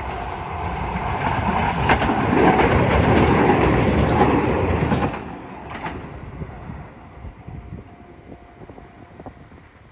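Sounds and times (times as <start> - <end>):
train wheels knocking: 0.0 - 6.0
train rumbling past: 0.0 - 9.9
wind buffeting microphone: 0.0 - 9.9.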